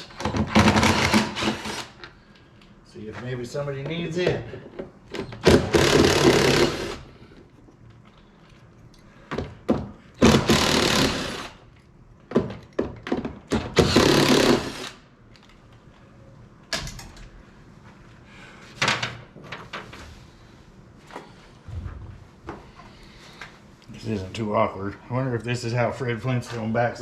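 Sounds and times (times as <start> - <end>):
tools knocking and clattering: 12.2 - 13.8.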